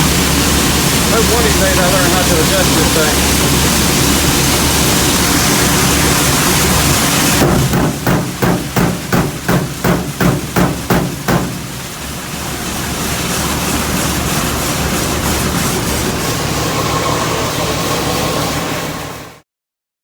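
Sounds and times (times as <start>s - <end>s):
harvest machinery running: 0.0s - 19.4s
sharp knocks: 7.4s - 11.9s.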